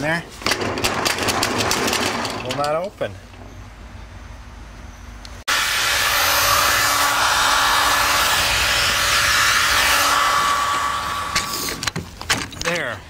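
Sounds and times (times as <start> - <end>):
hot-air blower hissing: 5.5 - 12.0.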